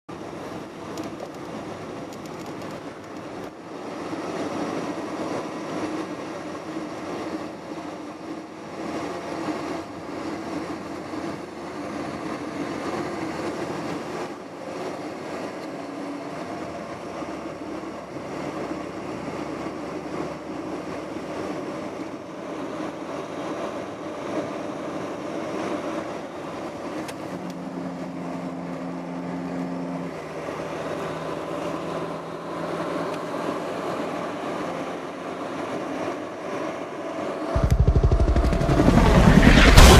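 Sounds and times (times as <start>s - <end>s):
engine running: 26.0s - 39.9s
low steady tones: 37.6s - 39.9s.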